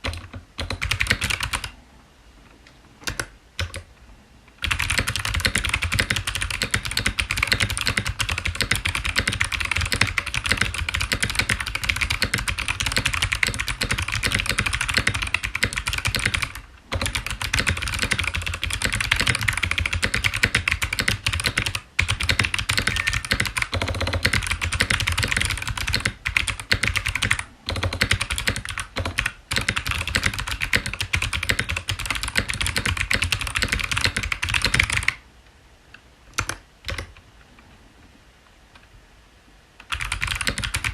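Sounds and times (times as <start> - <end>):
fast typing on mechanical keyboard: 0.0 - 1.7, 4.6 - 17.6, 18.2 - 20.3, 28.0 - 33.7, 39.8 - 40.9.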